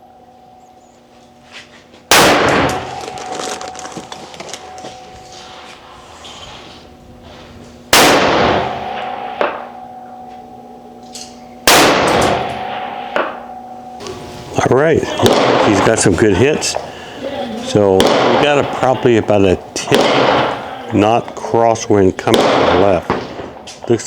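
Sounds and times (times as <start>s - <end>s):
rifle shots with ringing echo: 2.1s - 3.8s, 7.9s - 9.8s, 11.6s - 13.5s, 15.2s - 16.1s, 17.9s - 21.2s, 22.2s - 23.7s.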